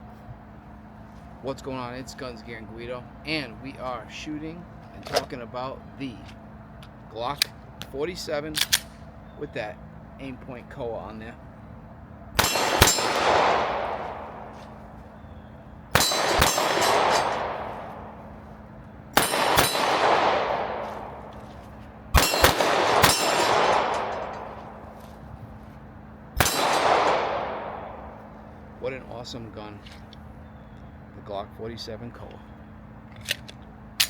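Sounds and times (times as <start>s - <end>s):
pistol shots with echo: 12.4s - 15.1s, 15.9s - 18.6s, 19.2s - 25.1s, 26.4s - 28.7s
metallic ring of steel targets: 12.4s - 15.2s, 15.9s - 25.4s, 26.4s - 28.6s.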